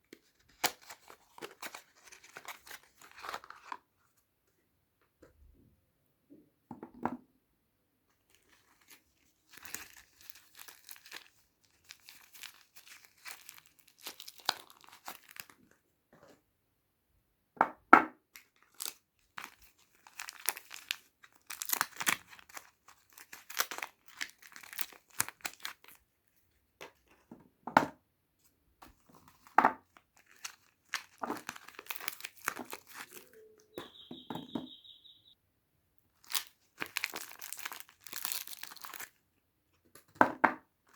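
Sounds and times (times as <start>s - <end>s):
packaging crinkling and tearing: 0.2s - 3.8s, 8.3s - 15.6s, 18.4s - 26.0s, 30.1s - 33.3s, 36.2s - 39.2s
high squeak: 33.1s - 35.4s.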